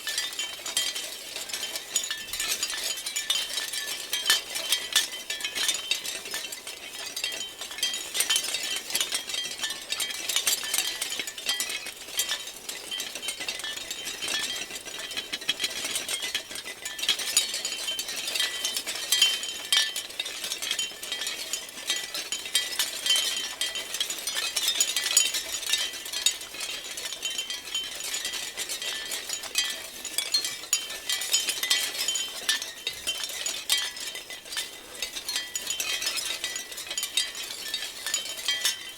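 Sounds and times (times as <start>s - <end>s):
shell wind chimes clinking: 28.9s - 38.9s.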